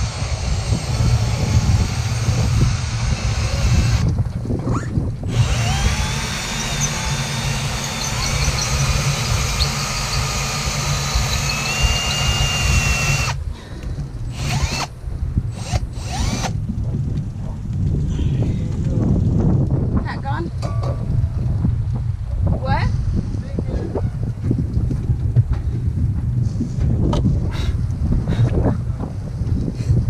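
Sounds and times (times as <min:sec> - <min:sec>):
power drill boring into fiberglass: 0:00.0 - 0:04.1, 0:04.7 - 0:13.4, 0:14.3 - 0:14.9, 0:15.6 - 0:16.6.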